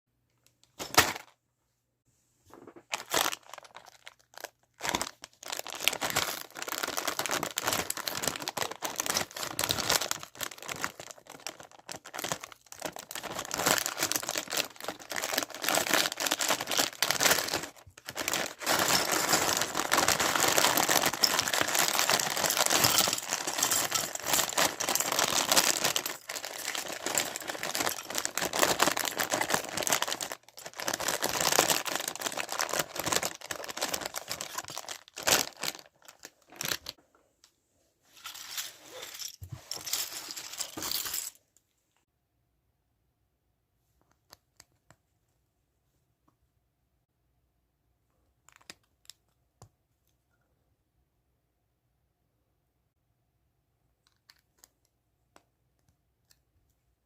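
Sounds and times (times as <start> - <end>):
plastic bags crinkling and tearing: 2.7 - 37.0.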